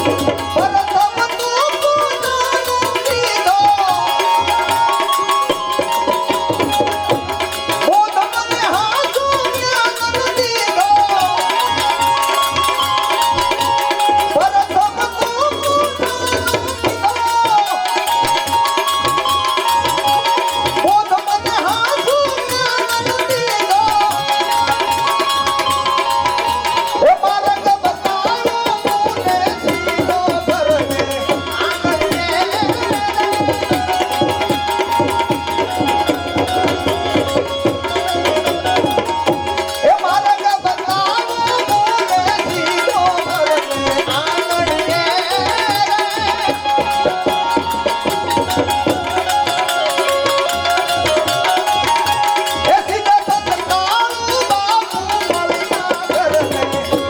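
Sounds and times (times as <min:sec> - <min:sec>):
gliding melody instrument: 0:00.0 - 0:09.2
tabla playing a busy rhythm: 0:00.0 - 0:57.0.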